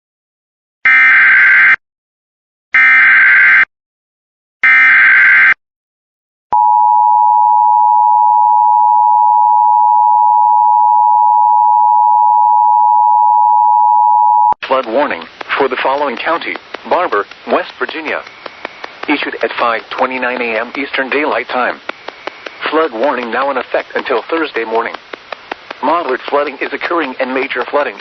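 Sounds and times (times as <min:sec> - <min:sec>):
loud steady attention tone: 0:06.6 - 0:28.0.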